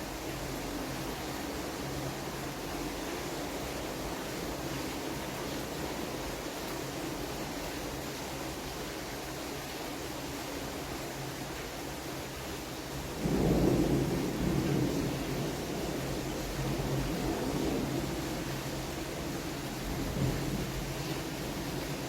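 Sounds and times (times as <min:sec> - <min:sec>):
rain hissing: 0:00.0 - 0:22.0
thunder rumbling: 0:13.1 - 0:20.9.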